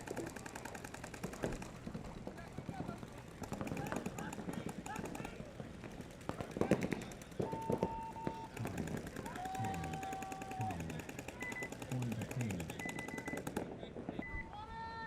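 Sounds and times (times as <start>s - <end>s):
paintball markers firing rapidly: 0.0s - 13.9s
people shouting: 8.7s - 11.1s.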